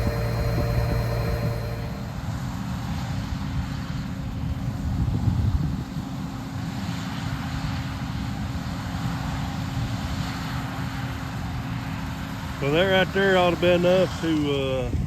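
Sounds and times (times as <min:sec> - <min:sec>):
diesel engine running steadily: 0:00.0 - 0:02.1.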